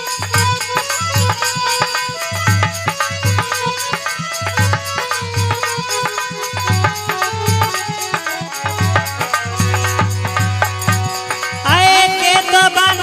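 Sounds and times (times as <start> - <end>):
hand drum beat: 0.0 - 13.0
held instrumental melody: 0.0 - 13.0.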